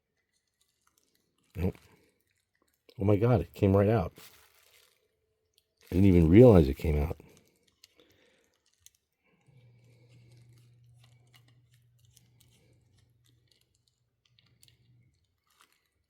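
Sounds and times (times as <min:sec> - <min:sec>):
small parts clicking: 0:07.1 - 0:16.0.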